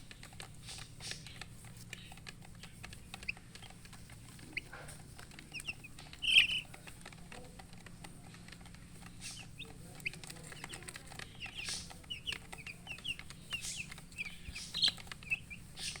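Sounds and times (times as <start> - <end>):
baby chicks peeping: 0.0 - 16.0.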